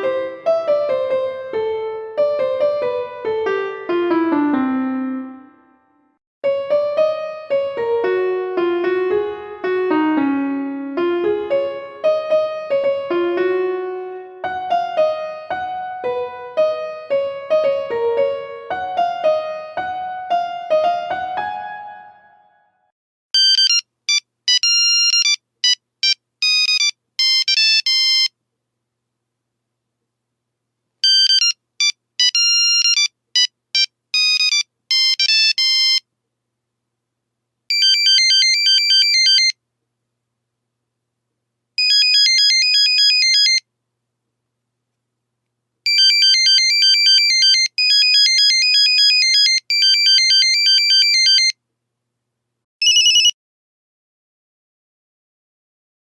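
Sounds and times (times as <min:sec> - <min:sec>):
monophonic ringtone melody: 0:37.7 - 0:39.5, 0:41.8 - 0:43.6, 0:45.9 - 0:51.5, 0:52.8 - 0:53.3.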